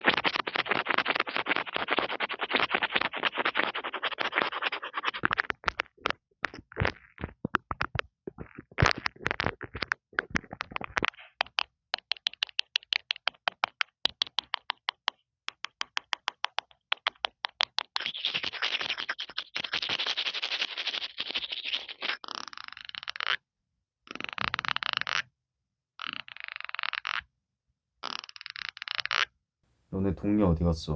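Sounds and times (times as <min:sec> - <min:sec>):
scratching on microphone: 0:00.0 - 0:23.4, 0:24.1 - 0:25.3, 0:26.0 - 0:27.3, 0:28.0 - 0:29.3
tapping on earphone microphone: 0:05.2 - 0:17.9.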